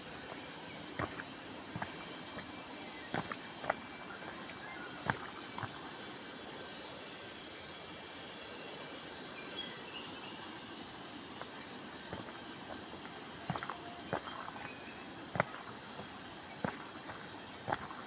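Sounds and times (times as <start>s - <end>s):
footsteps on a path: 0.0s - 5.9s, 11.4s - 18.0s
rain-forest insects chorus: 0.0s - 18.0s.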